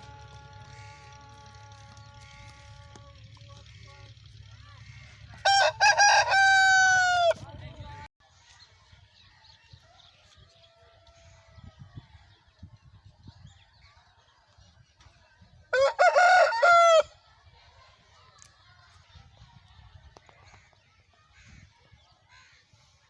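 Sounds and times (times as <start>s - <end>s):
rooster crowing: 5.4s - 7.4s, 15.7s - 17.1s.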